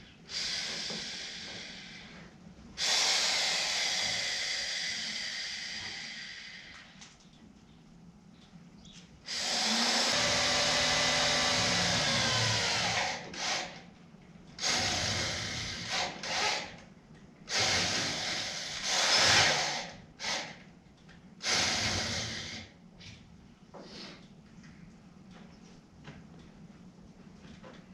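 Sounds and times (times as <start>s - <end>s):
power drill drilling: 2.8s - 5.8s, 9.3s - 13.8s, 14.6s - 16.7s, 17.5s - 20.6s, 21.4s - 22.7s.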